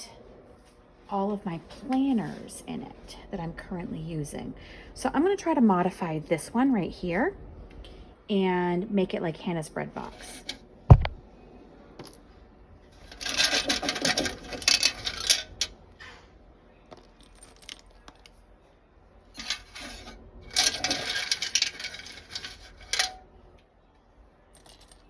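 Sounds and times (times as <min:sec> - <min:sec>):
metal tool box tray rattling: 0:13.1 - 0:15.5, 0:19.4 - 0:23.2.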